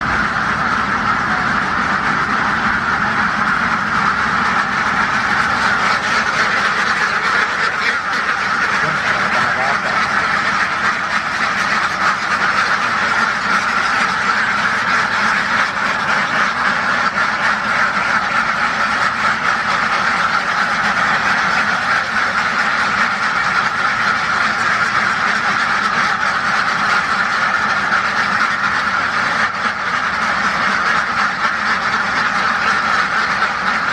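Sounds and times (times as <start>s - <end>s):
ducks quacking: 0.0s - 33.9s.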